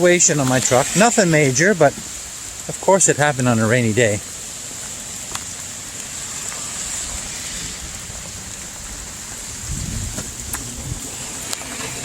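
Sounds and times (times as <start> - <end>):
heavy rain hissing: 0.0 - 12.0
water drips ticking: 4.7 - 6.6.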